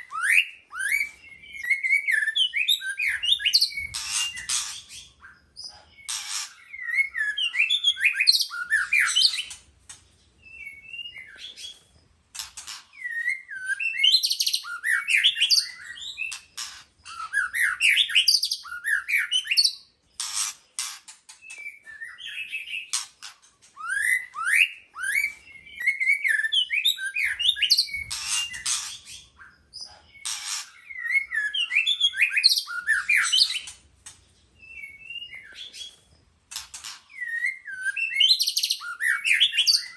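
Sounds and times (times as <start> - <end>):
bird singing varied whistles: 13.0 - 16.4, 23.8 - 29.5, 37.1 - 39.9.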